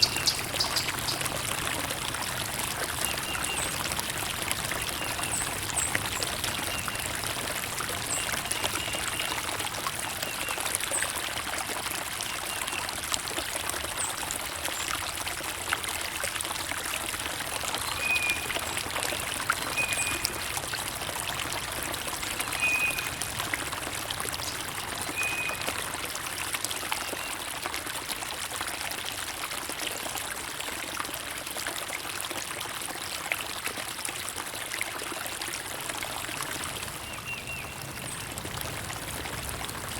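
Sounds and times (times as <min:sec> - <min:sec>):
bird high calls: 0:00.0 - 0:01.2
stream trickling and splashing: 0:00.0 - 0:39.9.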